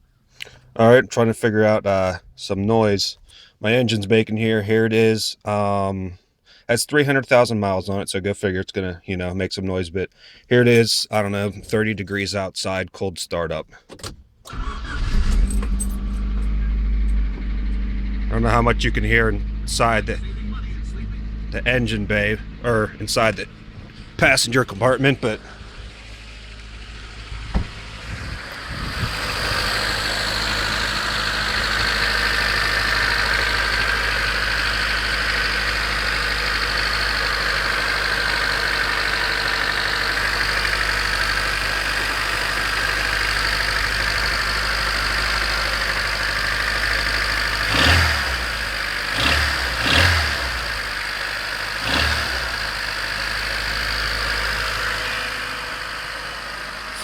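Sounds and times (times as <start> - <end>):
car engine idling with mechanical racket: 13.9 - 57.0.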